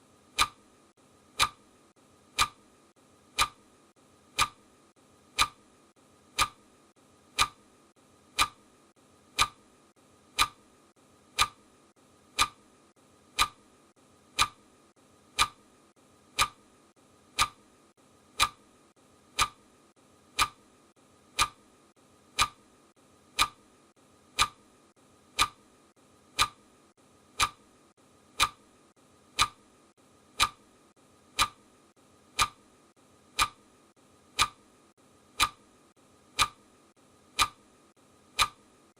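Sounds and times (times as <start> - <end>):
clock ticking: 0.3 - 0.6, 1.3 - 1.6, 2.3 - 2.7, 3.3 - 3.7, 4.3 - 4.7, 5.3 - 5.7, 6.3 - 6.7, 7.3 - 7.7, 8.3 - 8.7, 9.3 - 9.7, 10.3 - 10.7, 11.3 - 11.7, 12.3 - 18.7, 19.3 - 20.7, 21.3 - 23.7, 24.3 - 24.7, 25.3 - 25.7, 26.3 - 26.7, 27.3 - 27.7, 28.3 - 28.7, 29.3 - 29.6, 30.4 - 30.7, 31.3 - 31.6, 32.3 - 32.7, 33.3 - 33.7, 34.3 - 34.7, 35.3 - 35.7, 36.3 - 36.7, 37.3 - 37.7, 38.3 - 38.9.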